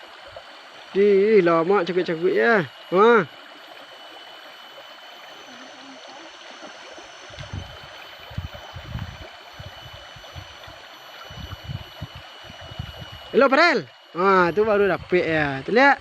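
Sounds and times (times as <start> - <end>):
stream flowing: 0.0 - 16.0
thin steady high tone: 0.0 - 16.0.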